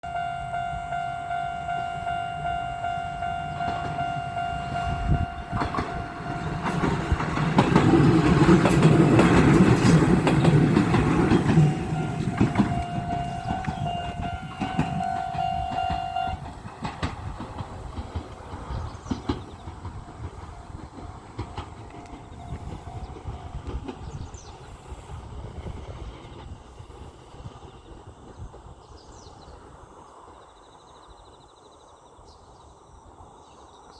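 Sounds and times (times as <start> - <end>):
level crossing bell ringing: 0.0 - 7.1, 11.4 - 16.4
train wheels rumbling and clacking: 0.2 - 29.7.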